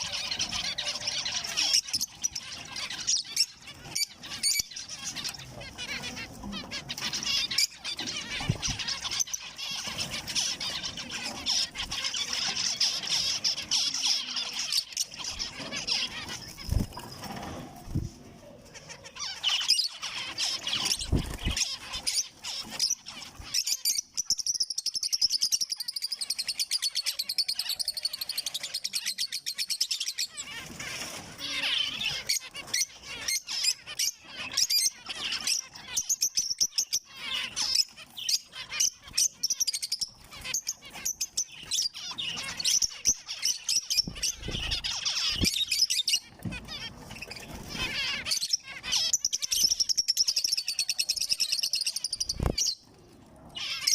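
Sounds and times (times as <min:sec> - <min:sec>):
finches chirping and singing: 0:00.0 - 0:53.9.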